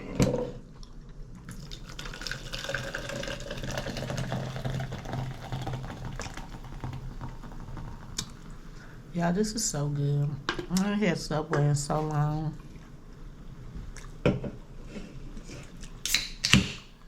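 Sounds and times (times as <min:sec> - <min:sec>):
drink pouring into cup: 0:01.5 - 0:08.7.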